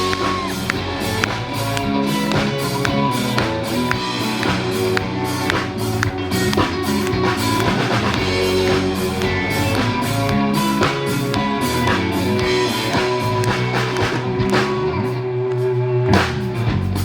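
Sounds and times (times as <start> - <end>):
drum kit beat: 0.0 - 15.2, 16.2 - 17.0
bass guitar: 0.0 - 17.0
electric guitar: 0.0 - 17.0.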